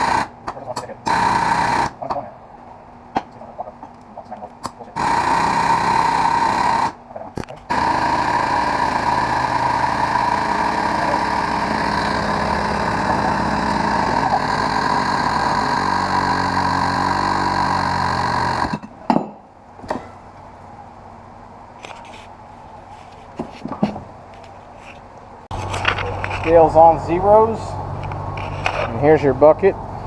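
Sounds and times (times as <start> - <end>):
angle grinder high whine: 0.0 - 0.4, 1.0 - 2.0, 5.0 - 7.0, 7.6 - 18.8.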